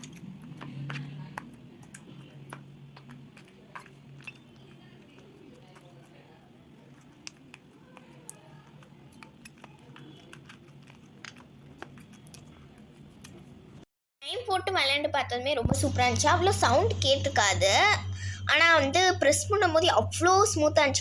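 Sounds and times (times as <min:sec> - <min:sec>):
faint steady hum: 0:14.3 - 0:21.0.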